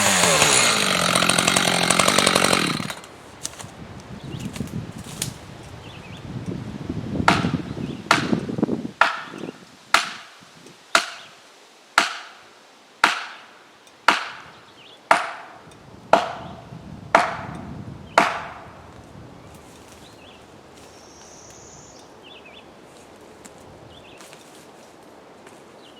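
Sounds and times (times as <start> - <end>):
chainsaw idling: 0.0 - 3.7
hammer striking wedge: 12.0 - 12.3, 13.0 - 13.4, 14.1 - 14.4, 15.1 - 15.5.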